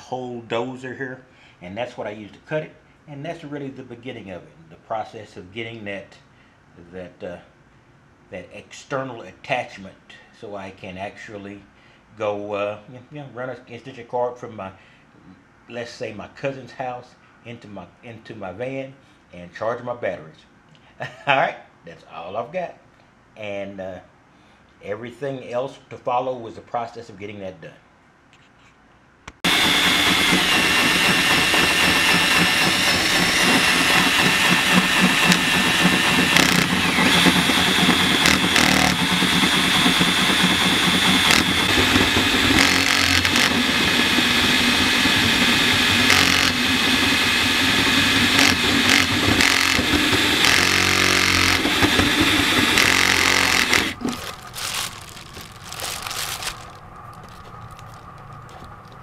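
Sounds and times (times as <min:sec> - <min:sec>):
hole saw grinding through metal: 0:29.4 - 0:54.2.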